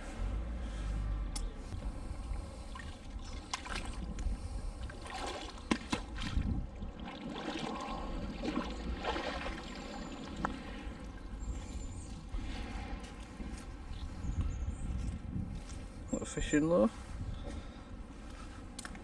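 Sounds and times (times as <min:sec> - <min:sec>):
water splashing and trickling: 0:01.8 - 0:13.9.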